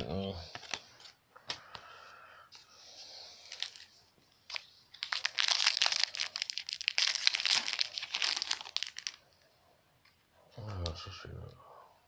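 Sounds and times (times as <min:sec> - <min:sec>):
wrapper crinkling and tearing: 0:03.4 - 0:09.3.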